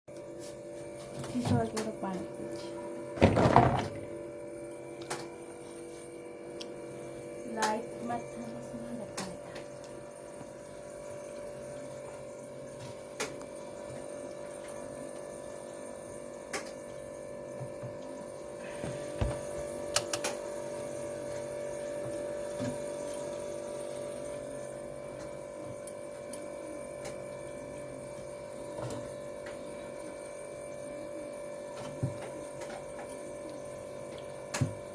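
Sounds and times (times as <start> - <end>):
mechanical hum: 0.1 - 34.9.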